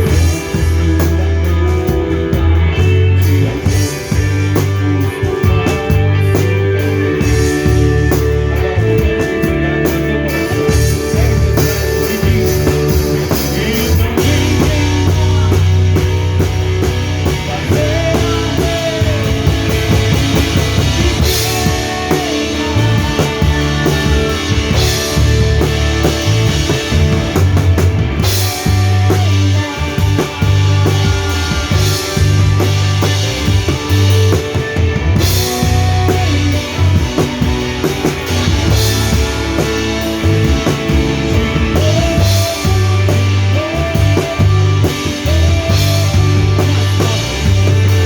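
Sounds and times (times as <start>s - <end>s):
live rock band playing: 0.0s - 48.0s
bass drum hits: 10.8s - 48.0s.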